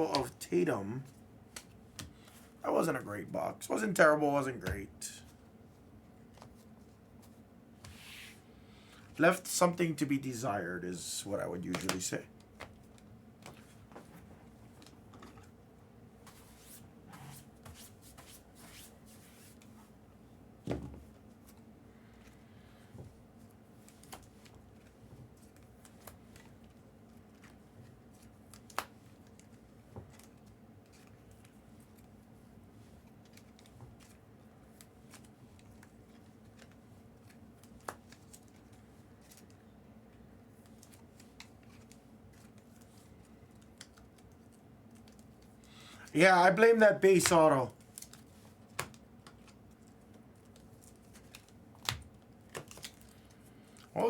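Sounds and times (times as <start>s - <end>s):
low room hum: 0.0s - 54.0s
thump on table: 20.7s - 21.0s.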